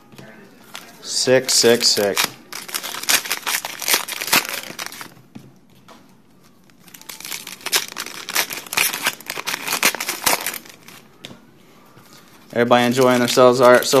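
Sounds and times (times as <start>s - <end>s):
plastic wrappers crinkling and tearing: 0.7s - 5.2s, 6.5s - 11.2s, 12.0s - 14.0s.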